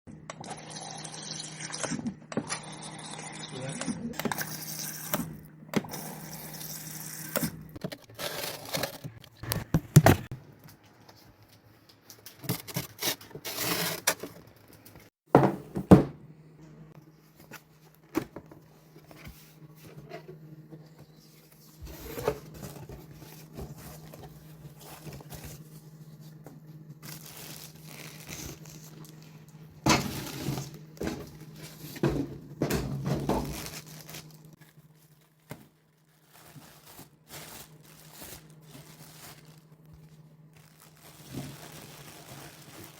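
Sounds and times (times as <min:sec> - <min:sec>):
knocks and thuds: 0:15.3 - 0:16.2
steady low hum: 0:16.1 - 0:42.9
plastic crinkling: 0:27.0 - 0:29.4, 0:33.3 - 0:42.9.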